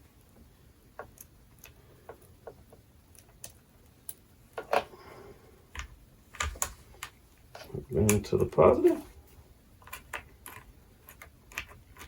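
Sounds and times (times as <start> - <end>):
wire connectors clicking and tapping: 1.0 - 4.9, 5.7 - 8.6, 9.8 - 12.0.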